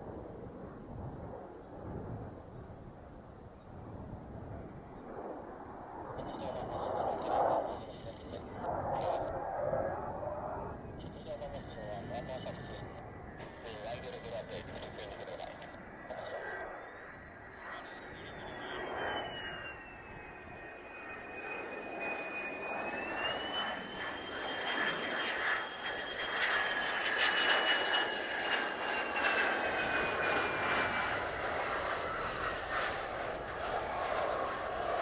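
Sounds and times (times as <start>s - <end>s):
jet engine whining: 5.6s - 35.0s.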